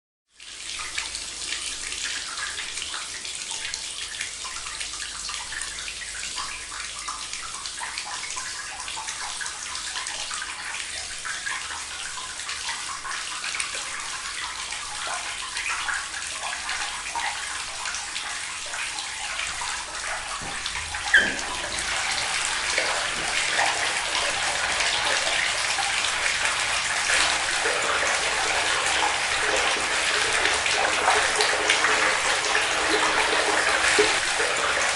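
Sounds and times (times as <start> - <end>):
water trickling and splashing: 0.3 - 34.9.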